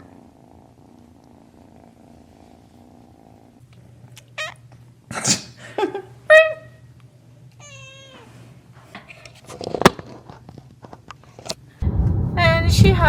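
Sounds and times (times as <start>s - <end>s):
kitten purring: 0.0s - 5.1s.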